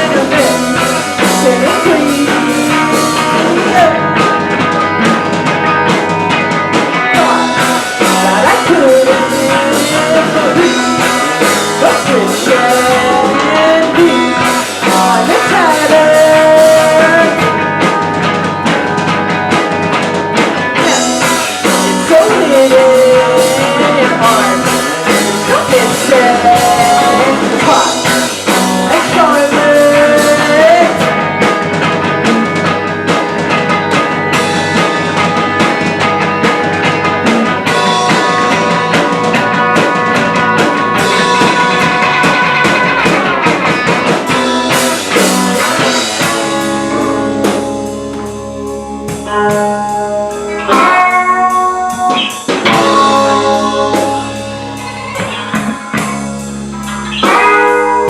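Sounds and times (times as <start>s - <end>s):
person singing: 0.0s - 4.4s, 7.0s - 17.7s, 20.8s - 31.2s, 37.5s - 56.2s
drum kit: 0.0s - 58.0s
guitar: 0.0s - 58.0s
rock band playing live: 0.0s - 58.0s.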